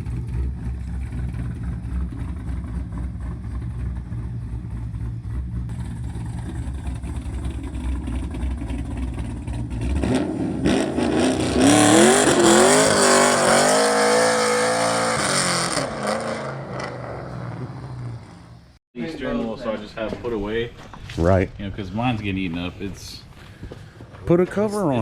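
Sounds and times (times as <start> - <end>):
car engine rumbling and revving: 0.0 - 18.8.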